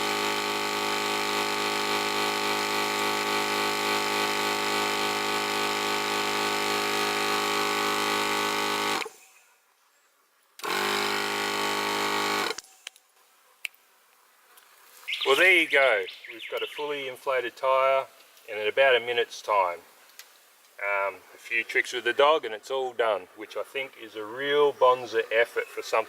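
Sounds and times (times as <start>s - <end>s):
air compressor running: 0.0s - 9.1s, 10.6s - 12.6s.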